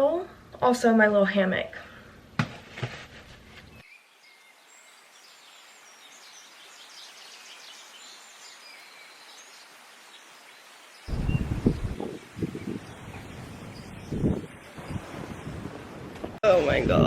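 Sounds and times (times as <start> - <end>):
birds chirping and trilling: 3.7 - 15.5.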